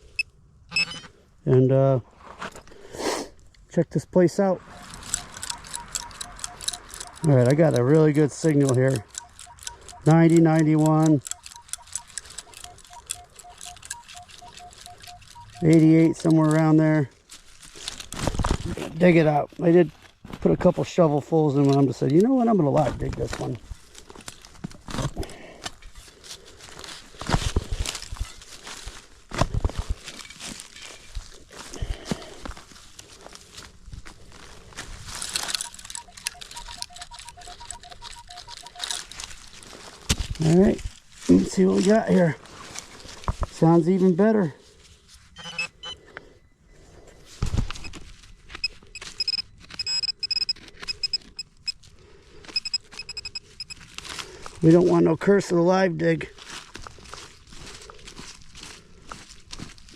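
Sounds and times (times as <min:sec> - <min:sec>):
metal detector beeping: 0:00.0 - 0:01.2, 0:04.4 - 0:17.1, 0:35.2 - 0:44.3, 0:45.1 - 0:54.0
digging scraping clicks: 0:04.7 - 0:16.7, 0:35.1 - 0:40.3, 0:47.7 - 0:51.8
rustling: 0:23.0 - 0:43.8.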